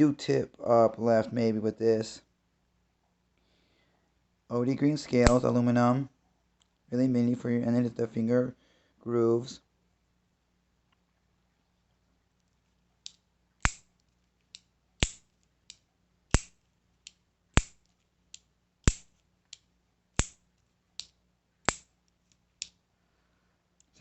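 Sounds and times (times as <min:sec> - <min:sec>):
knife blade snapping: 0:14.5 - 0:19.6, 0:20.2 - 0:20.4, 0:21.7 - 0:21.9.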